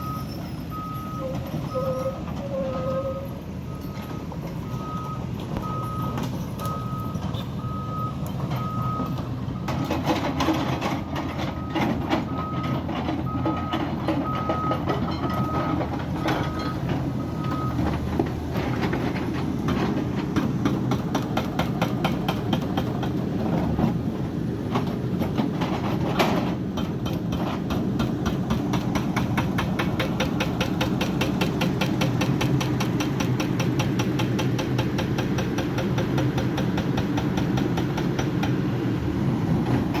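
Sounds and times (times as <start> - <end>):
reversing alarm beeping: 0.0 - 10.0, 10.9 - 18.0
diesel engine clattering: 0.0 - 40.0
engine knock: 18.6 - 23.4, 26.7 - 38.6.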